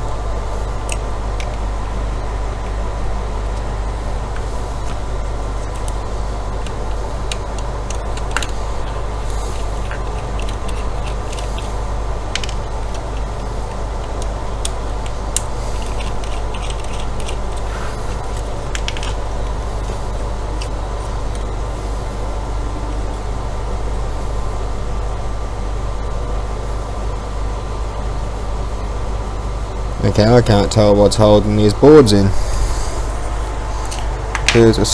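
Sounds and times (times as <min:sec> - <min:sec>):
low background drone: 0:00.0 - 0:34.9
tools and small parts clicking: 0:09.8 - 0:11.7.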